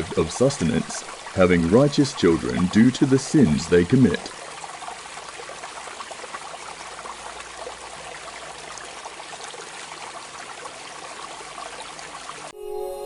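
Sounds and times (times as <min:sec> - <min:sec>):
stream trickling and splashing: 0:00.0 - 0:12.5
bell-like music tones: 0:12.5 - 0:13.0.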